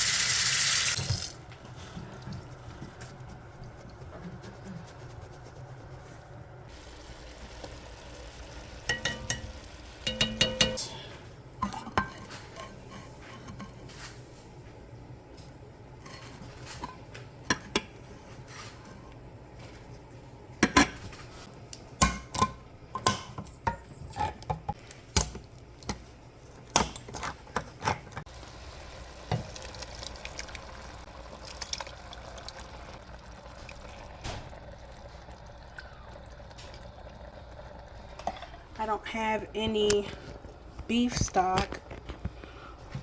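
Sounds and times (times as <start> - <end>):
utensils and cans knocking on pot: 8.8 - 10.9.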